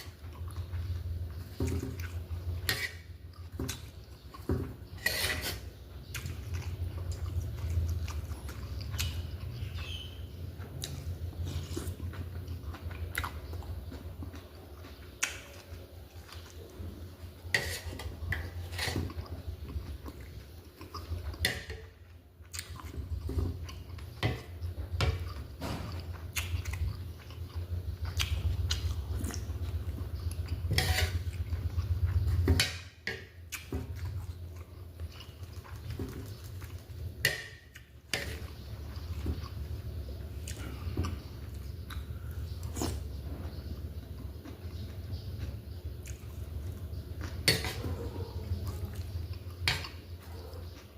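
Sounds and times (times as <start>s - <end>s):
chewing and biting: 22.4s - 32.4s, 33.5s - 43.1s
cutlery clinking against dishes: 47.4s - 47.9s.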